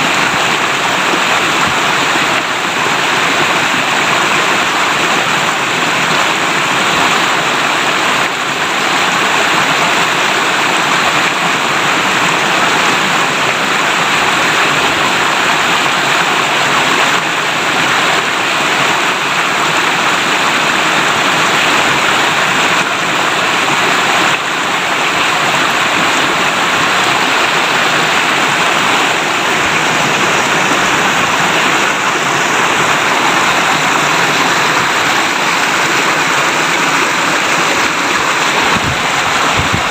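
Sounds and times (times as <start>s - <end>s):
river water babbling: 0.0s - 39.9s.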